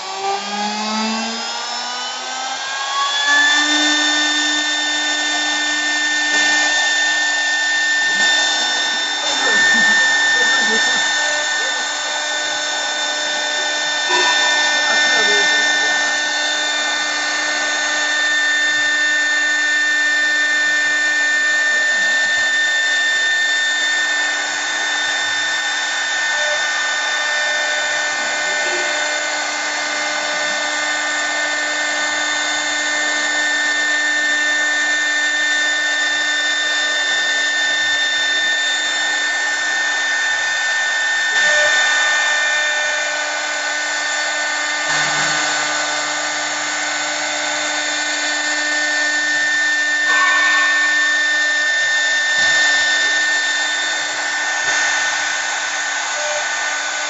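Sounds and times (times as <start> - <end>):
wood lathe whine and hiss: 0.0 - 57.0.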